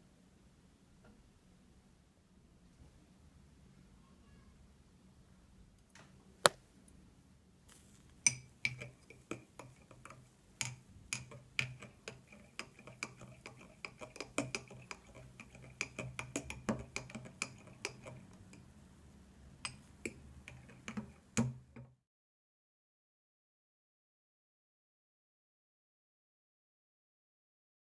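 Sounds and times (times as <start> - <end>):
metal spoon clinking against cup: 8.2 - 18.6, 19.6 - 21.1.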